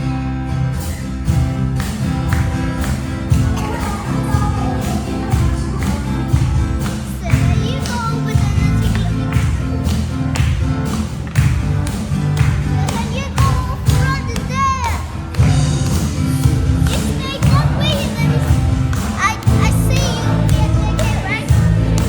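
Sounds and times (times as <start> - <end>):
worship song with guitar: 0.0 - 22.0
person singing: 3.4 - 10.1, 12.8 - 22.0.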